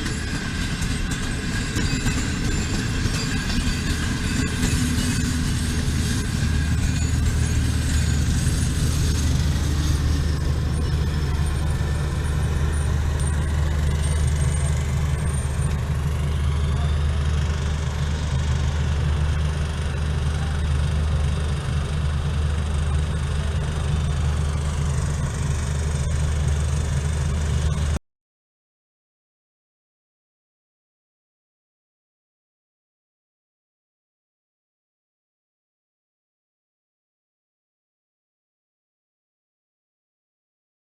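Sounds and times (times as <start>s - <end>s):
diesel locomotive engine drone: 0.0s - 28.0s.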